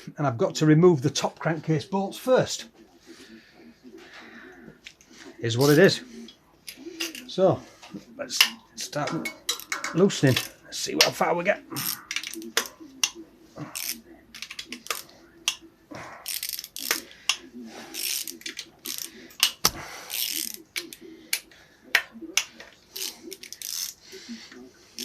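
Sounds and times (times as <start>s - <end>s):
ratchet wrench clicking: 13.8s - 15.0s, 16.3s - 17.0s, 17.9s - 19.5s, 20.1s - 20.6s, 23.0s - 24.0s.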